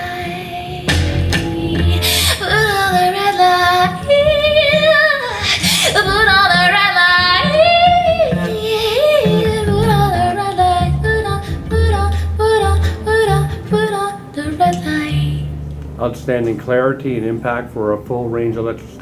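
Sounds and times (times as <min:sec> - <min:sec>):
woman singing: 0:00.0 - 0:15.7
guitar: 0:00.0 - 0:19.0
pulsing bass line: 0:00.9 - 0:03.0, 0:06.0 - 0:06.6, 0:09.5 - 0:13.8.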